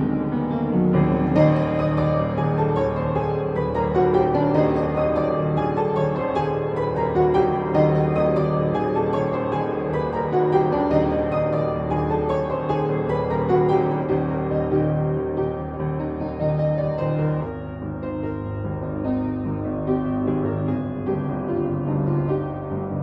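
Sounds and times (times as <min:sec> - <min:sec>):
solo piano playing: 0:00.0 - 0:23.0.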